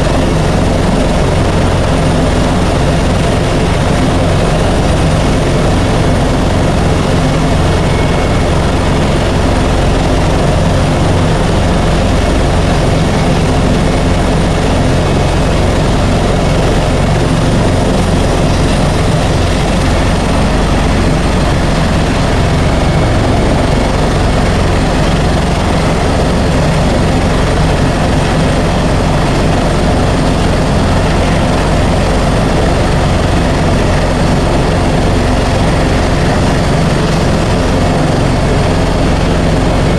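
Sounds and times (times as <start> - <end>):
helicopter engine and rotors: 0.0 - 39.9.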